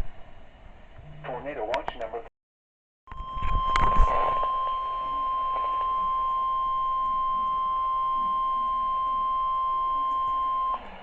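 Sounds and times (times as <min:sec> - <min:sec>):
steady high alarm beep: 0:03.1 - 0:10.8
crackling noise: 0:03.1 - 0:11.0.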